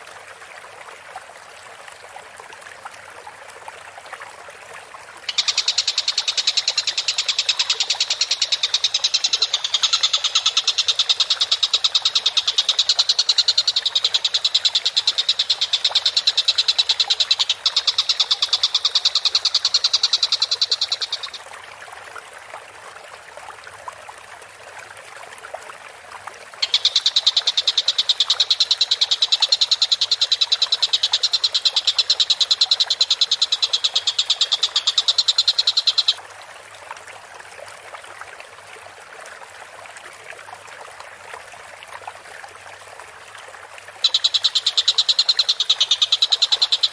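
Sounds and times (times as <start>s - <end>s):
bird trilling: 5.3s - 21.4s, 26.6s - 36.2s, 44.0s - 46.9s.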